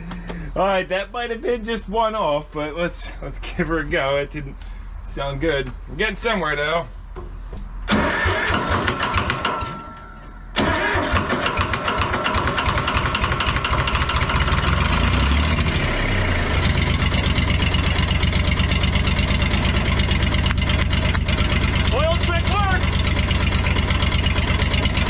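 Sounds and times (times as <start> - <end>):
truck engine running: 7.8 - 25.0
starter cranking engine: 7.9 - 9.6, 10.6 - 25.0.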